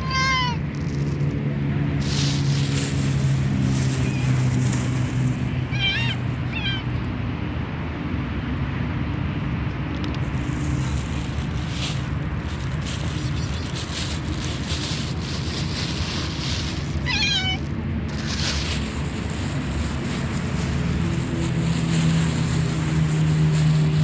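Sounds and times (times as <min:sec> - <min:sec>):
cat meowing: 0:00.0 - 0:00.6, 0:05.6 - 0:07.1, 0:17.0 - 0:17.6.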